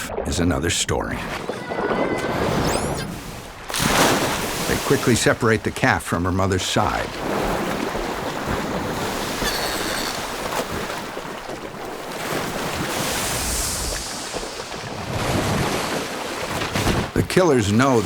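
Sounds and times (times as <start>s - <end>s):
waves surging and splashing: 0.0s - 18.0s
wind-like noise: 12.6s - 16.1s.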